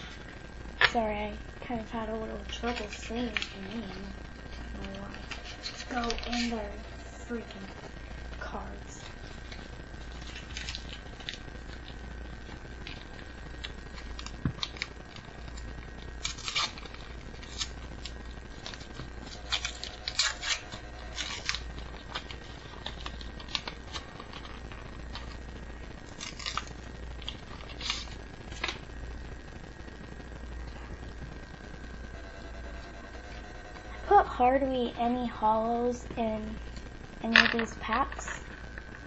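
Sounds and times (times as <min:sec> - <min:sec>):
steady low hum: 0:00.0 - 0:39.0
cards and paper rustling: 0:02.3 - 0:07.9, 0:08.5 - 0:15.6, 0:16.2 - 0:25.4, 0:26.2 - 0:28.8.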